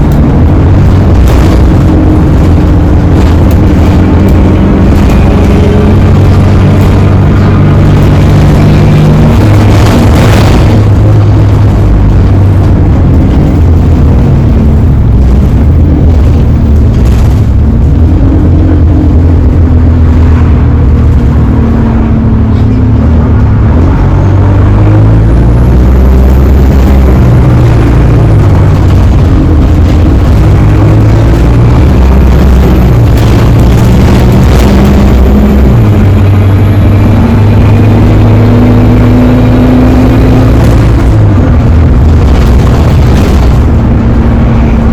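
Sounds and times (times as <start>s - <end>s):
bus engine running: 0.0s - 44.9s
drive axle whine: 0.0s - 44.9s.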